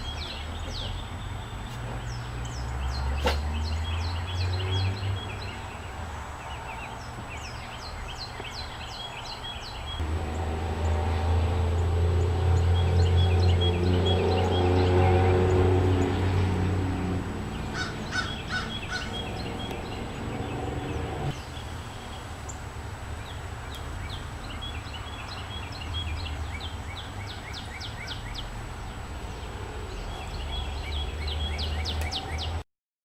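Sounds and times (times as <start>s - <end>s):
songbirds chirping: 0.0s - 32.6s
low hum: 10.0s - 21.4s.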